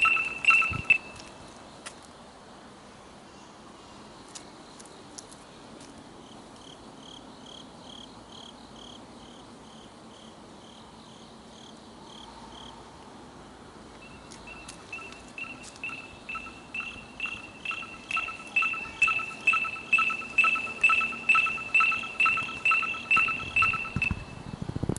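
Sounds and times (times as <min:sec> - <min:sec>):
electric scooter alarm beeping: 0:00.0 - 0:01.3, 0:14.0 - 0:24.5.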